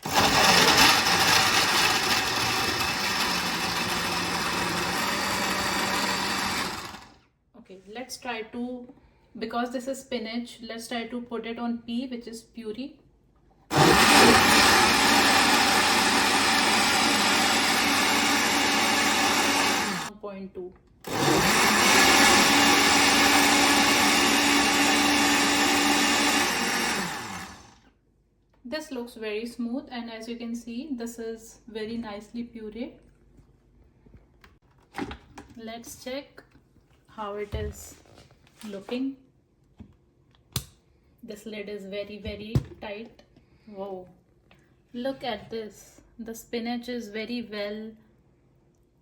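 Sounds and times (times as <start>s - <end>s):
blender motor running: 0.0s - 7.2s, 13.7s - 20.1s, 21.1s - 27.9s.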